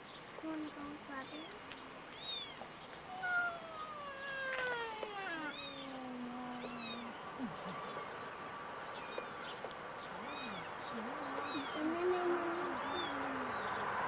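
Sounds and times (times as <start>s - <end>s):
kittens mewing: 2.2s - 8.2s, 10.2s - 13.6s.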